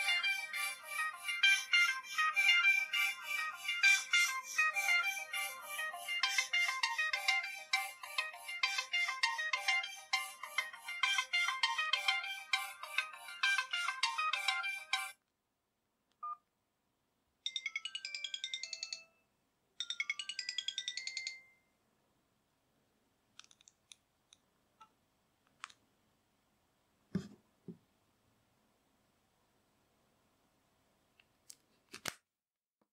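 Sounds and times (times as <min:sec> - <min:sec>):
phone electronic melody: 0:00.0 - 0:15.2.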